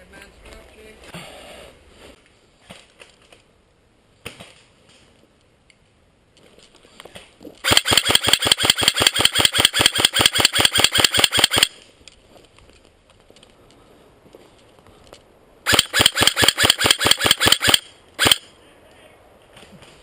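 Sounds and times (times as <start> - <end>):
airsoft rifle firing full auto: 7.6 - 11.8, 15.7 - 18.4.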